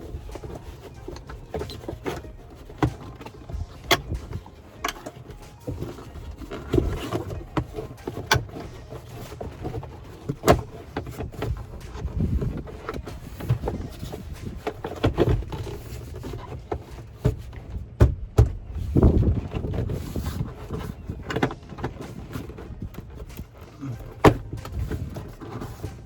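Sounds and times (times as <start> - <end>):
plastic trim panels knocking and clicking: 0.0 - 26.0
wind rumbling on microphone: 9.9 - 16.7, 17.4 - 23.6.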